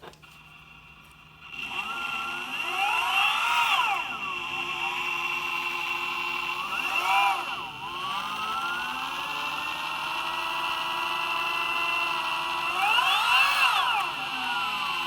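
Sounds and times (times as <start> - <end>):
electric skateboard motor whining: 0.2 - 15.0.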